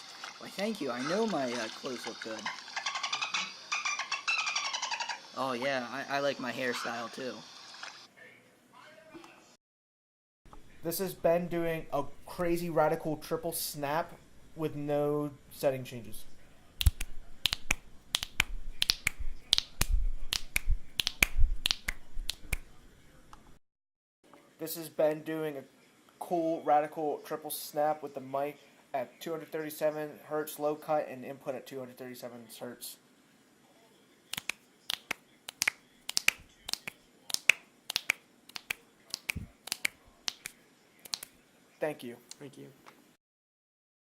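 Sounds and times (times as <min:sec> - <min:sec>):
fingers snapping: 0:16.8 - 0:22.7, 0:34.3 - 0:41.3.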